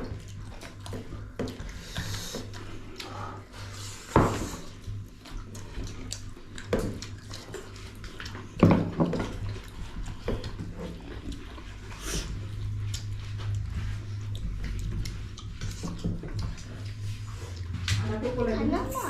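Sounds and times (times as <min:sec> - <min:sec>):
steady low hum: 0:00.0 - 0:19.0
wet slurping and chewing: 0:00.0 - 0:19.0.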